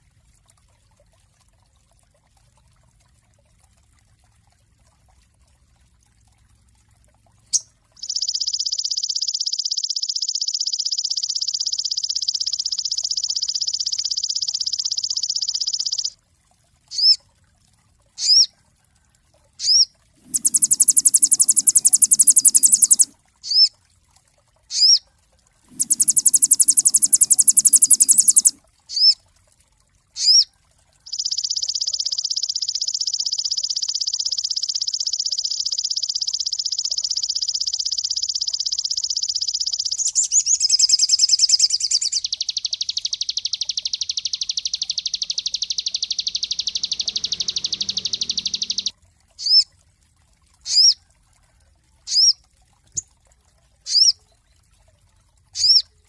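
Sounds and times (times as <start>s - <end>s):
bird rising whistled notes: 20.2s - 23.1s, 25.7s - 28.6s
bird buzzing rattle: 20.3s - 23.1s, 25.7s - 28.5s.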